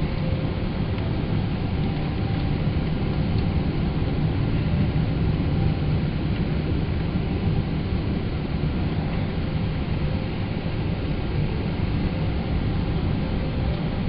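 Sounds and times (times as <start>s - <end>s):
airplane cabin rumble: 0.0s - 14.0s.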